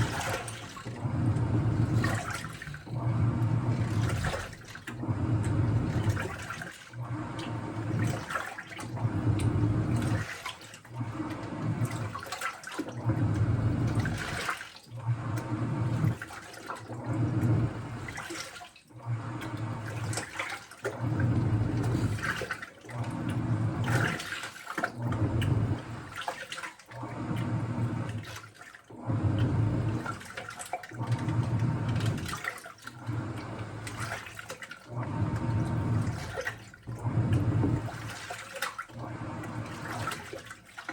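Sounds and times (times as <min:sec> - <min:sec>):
washing machine running: 0:00.0 - 0:40.9
water sloshing in drum: 0:00.0 - 0:40.9.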